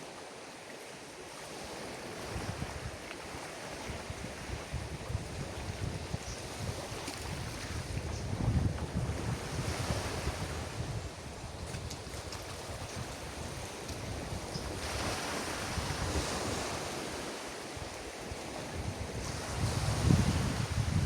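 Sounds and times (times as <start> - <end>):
waves washing onto beach: 0.0 - 21.0
wind buffeting microphone: 2.2 - 3.0, 3.8 - 21.0.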